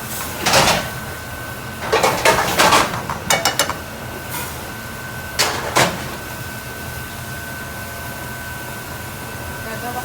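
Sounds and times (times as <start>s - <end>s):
kitchen equipment whine: 0.0s - 8.8s
kitchen utensils clicking and knocking: 1.8s - 4.0s.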